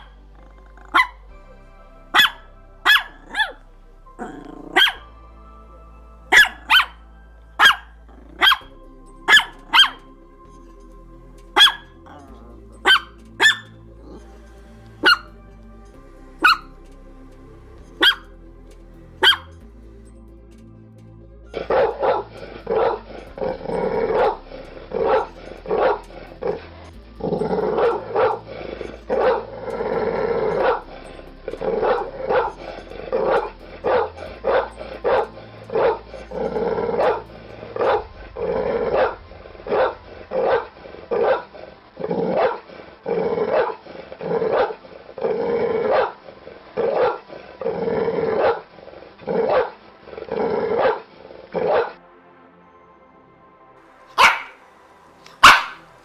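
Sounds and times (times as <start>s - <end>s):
dog barking: 0.0s - 1.2s, 2.1s - 3.6s, 4.2s - 5.1s, 6.3s - 7.0s, 7.6s - 8.7s, 9.3s - 10.0s, 11.6s - 14.2s, 15.0s - 15.3s, 18.0s - 18.2s, 19.2s - 19.5s, 45.6s - 46.2s, 50.6s - 51.0s, 54.2s - 54.6s, 55.4s - 55.9s.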